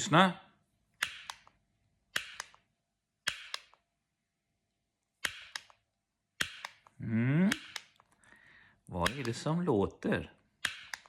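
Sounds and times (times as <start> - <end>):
sharp mechanical clicks: 1.0 - 3.9, 5.2 - 8.3, 9.0 - 9.6, 10.6 - 11.0.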